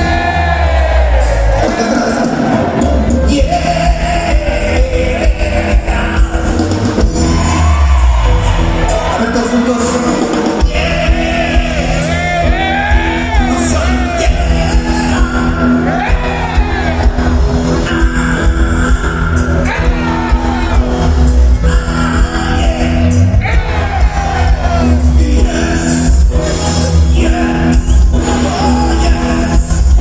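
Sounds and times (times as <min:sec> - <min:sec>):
live band playing amplified music: 0:00.0 - 0:30.0
person singing: 0:01.6 - 0:07.8.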